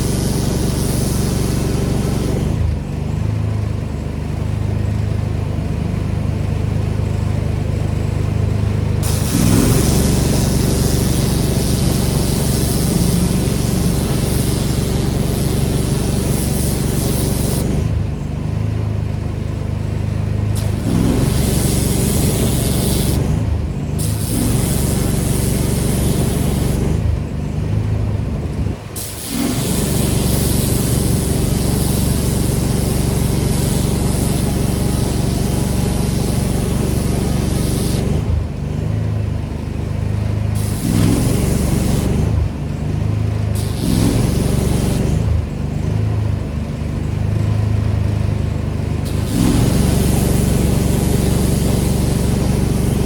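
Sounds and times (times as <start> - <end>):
high-pressure spray hissing: 0.0 - 2.6, 9.0 - 17.9, 20.6 - 27.0, 28.9 - 38.3, 40.6 - 42.4, 43.5 - 45.3, 49.0 - 53.0
pressure washer engine running: 0.0 - 27.5, 28.3 - 46.0, 47.0 - 53.0.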